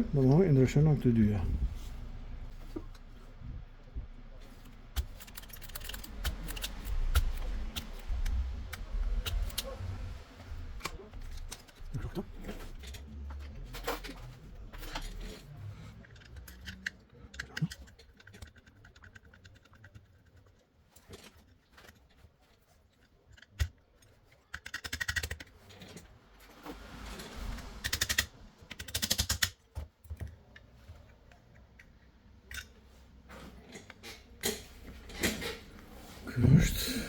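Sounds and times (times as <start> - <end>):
rattling clicks: 4.4 - 9.8
hand tools clicking and tapping: 4.4 - 14.2, 23.0 - 25.5, 27.8 - 30.4.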